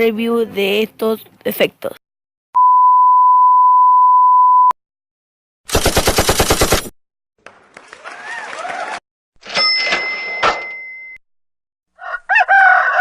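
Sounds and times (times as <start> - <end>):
censor beep: 2.6 - 4.8
machine-gun burst: 5.7 - 6.9.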